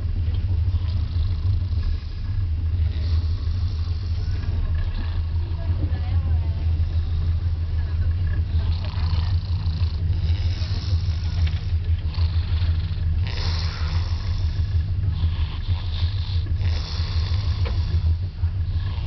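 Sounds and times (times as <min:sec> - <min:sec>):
train rumbling: 0:00.0 - 0:19.0
man snoring: 0:00.7 - 0:04.4, 0:08.5 - 0:19.0.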